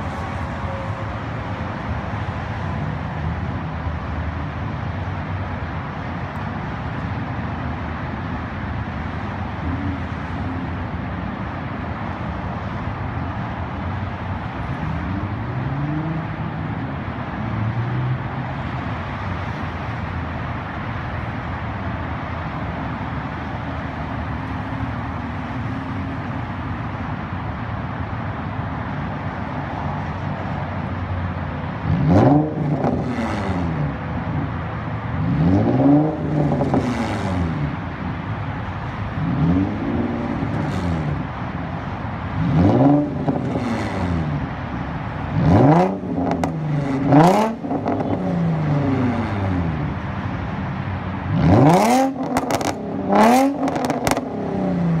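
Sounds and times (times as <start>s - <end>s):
car engine through straight-piped exhaust: 0.0s - 55.0s.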